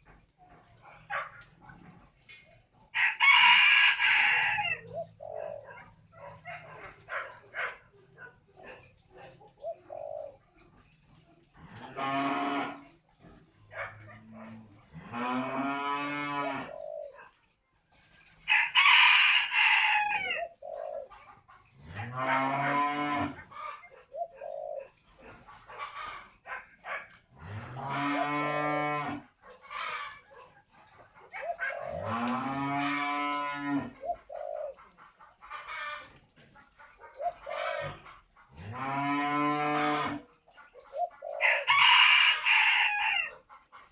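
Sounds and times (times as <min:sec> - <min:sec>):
dove cooing: 0:00.0 - 0:43.9
rooster crowing: 0:03.0 - 0:04.9, 0:18.5 - 0:20.5, 0:41.4 - 0:43.4
cattle mooing: 0:11.7 - 0:12.8, 0:14.3 - 0:16.7, 0:22.0 - 0:23.4, 0:27.4 - 0:29.3, 0:38.6 - 0:40.2.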